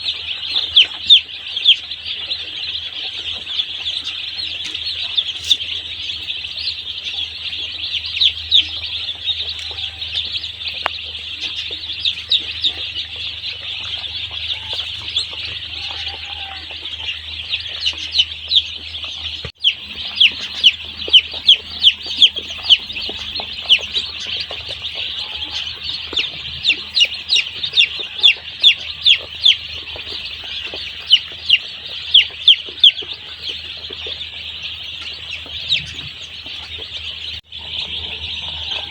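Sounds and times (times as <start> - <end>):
chicks peeping: 0.0 - 38.9
low hum: 17.0 - 30.9.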